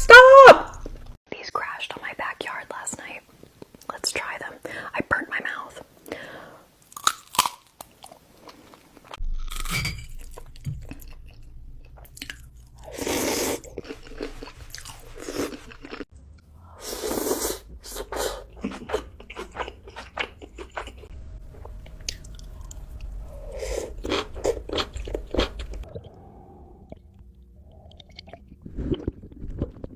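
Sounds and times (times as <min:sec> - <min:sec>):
crunchy bites and chewing: 0:06.9 - 0:11.3.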